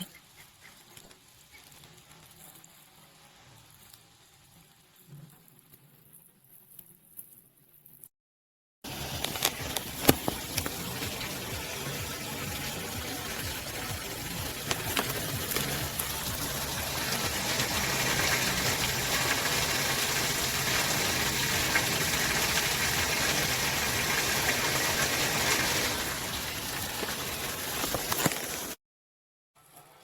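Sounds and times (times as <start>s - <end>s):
water rushing: 8.9s - 28.8s.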